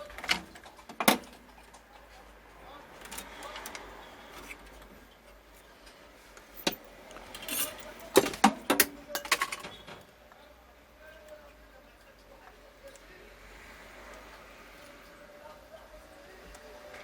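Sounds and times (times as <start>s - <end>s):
small metal tools clinking: 6.4s - 10.0s.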